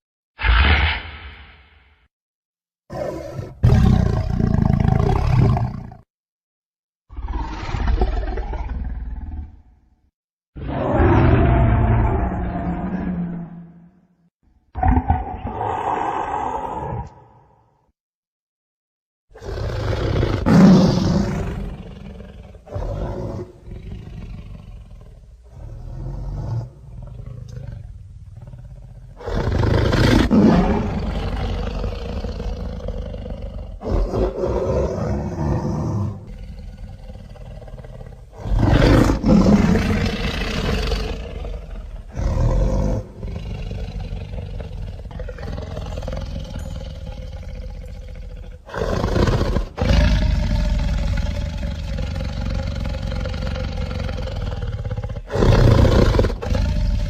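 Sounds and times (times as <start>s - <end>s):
monster roars: 0.4s - 1.7s, 10.6s - 13.8s, 14.8s - 17.6s
monster growls: 14.8s - 17.6s, 28.4s - 57.0s.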